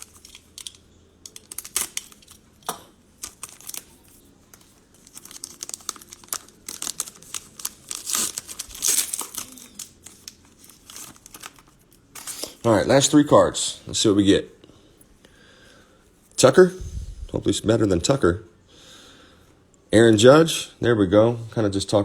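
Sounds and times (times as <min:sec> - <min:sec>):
cellophane wrapper tearing and crinkling: 0:00.0 - 0:12.6.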